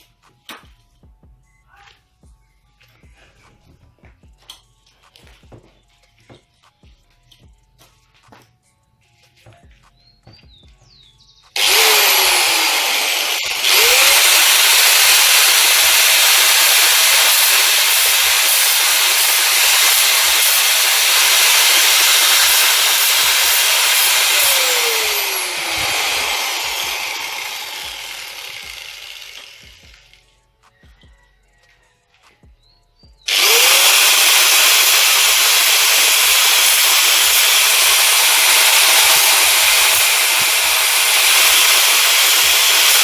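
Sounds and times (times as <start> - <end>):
electric power tool sanding metal: 11.6 - 30.2, 33.3 - 43.0.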